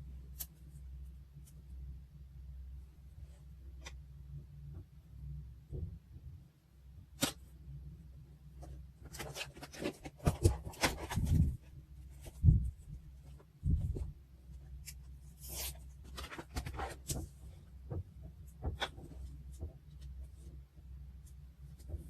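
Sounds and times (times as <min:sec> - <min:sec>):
paper rustling and crinkling: 0:09.0 - 0:12.8, 0:14.8 - 0:17.4.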